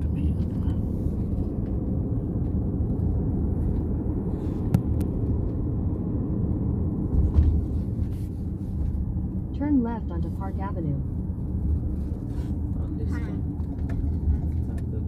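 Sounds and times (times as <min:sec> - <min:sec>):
car road and engine noise: 0:00.0 - 0:15.0.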